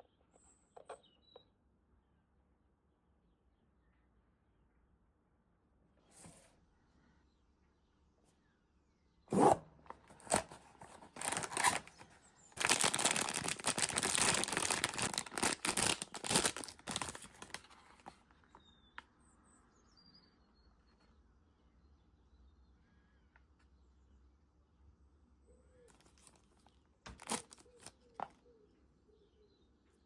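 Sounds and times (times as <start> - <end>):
packaging handling sounds: 9.3 - 18.6, 25.9 - 28.4
wrapper tearing and crinkling: 10.2 - 12.0, 12.6 - 18.2, 25.9 - 28.0.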